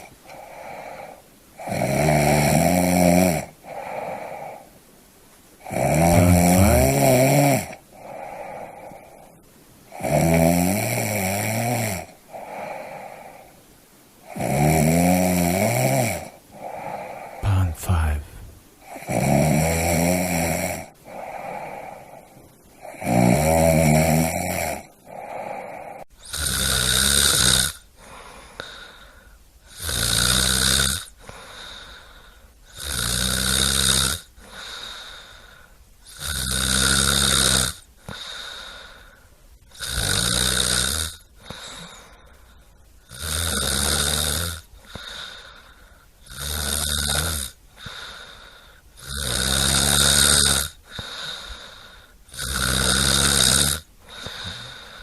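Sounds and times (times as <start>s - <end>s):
quiet breathing: 0.0s - 1.7s, 3.4s - 5.0s, 5.6s - 10.1s, 12.0s - 14.3s, 16.2s - 19.1s, 20.8s - 23.0s, 24.8s - 26.3s, 27.9s - 29.7s, 31.1s - 32.8s, 34.3s - 36.1s, 37.8s - 39.8s, 41.2s - 43.1s, 44.6s - 46.3s, 47.6s - 49.0s, 50.7s - 52.6s, 53.8s - 55.0s
person snoring: 0.0s - 4.7s, 5.6s - 9.2s, 9.9s - 13.5s, 14.3s - 22.2s, 22.8s - 27.8s, 43.1s - 55.0s.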